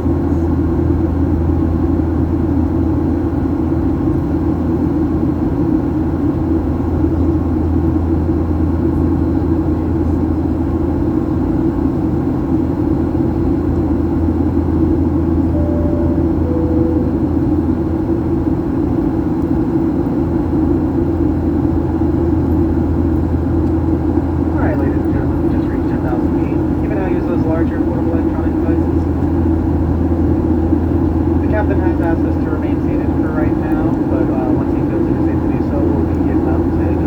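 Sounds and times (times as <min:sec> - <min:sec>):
jet engine roar in cabin: 0:00.0 - 0:37.0
two-note cabin chime: 0:15.4 - 0:17.9.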